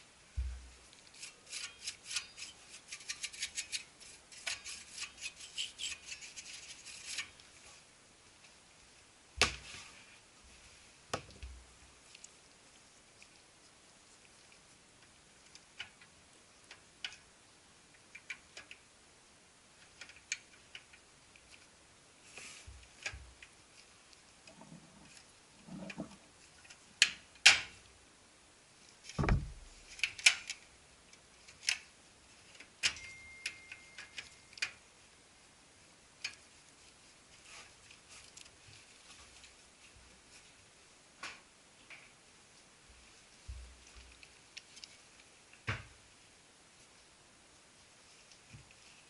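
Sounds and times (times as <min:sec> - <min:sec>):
heavy thud: 0:29.2 - 0:29.7.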